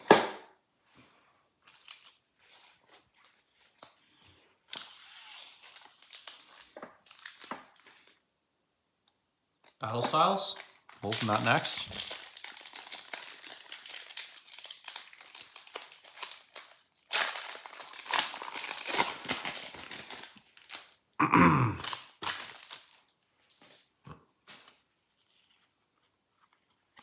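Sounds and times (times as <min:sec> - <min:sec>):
foil wrapper crinkling: 0:01.6 - 0:08.2, 0:09.8 - 0:21.1, 0:21.8 - 0:23.9.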